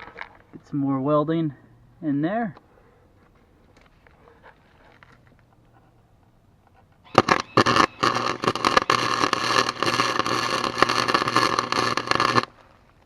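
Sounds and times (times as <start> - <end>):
welding arc crackling: 7.1 - 12.7.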